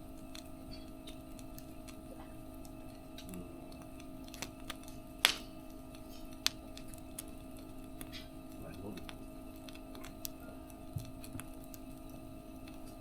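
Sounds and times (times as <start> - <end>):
faint steady hum: 0.0 - 13.0
wood fire crackling: 0.0 - 13.0.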